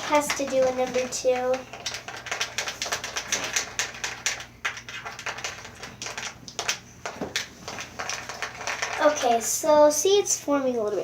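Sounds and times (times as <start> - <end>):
utensil stirring slime: 0.0 - 11.0.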